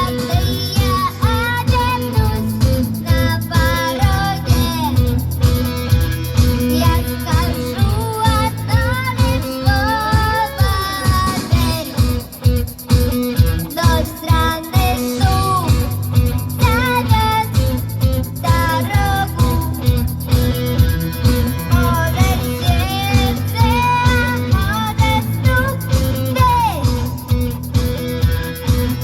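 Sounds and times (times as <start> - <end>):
child singing: 0.0 - 5.7, 6.3 - 12.5, 13.6 - 20.0, 21.4 - 27.5
guitar accompaniment: 0.0 - 29.0
steady drum beat: 0.0 - 29.0.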